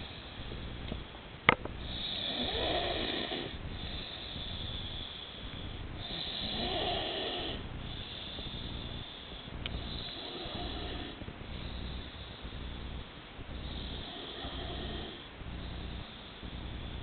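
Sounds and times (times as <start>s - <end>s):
woman snoring: 1.8s - 4.3s, 6.0s - 7.6s, 9.8s - 11.2s, 13.7s - 15.3s.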